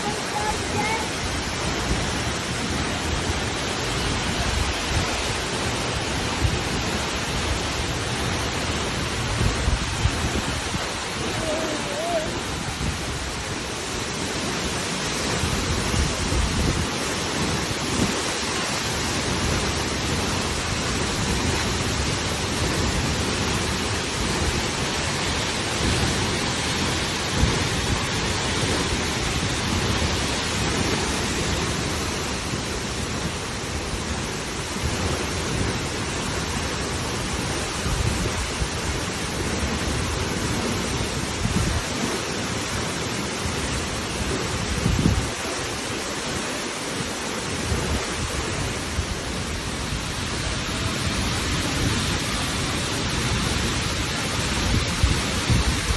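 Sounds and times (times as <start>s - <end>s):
wind buffeting microphone: 0.0s - 36.1s, 47.4s - 55.9s
rushing falling water: 0.0s - 55.9s.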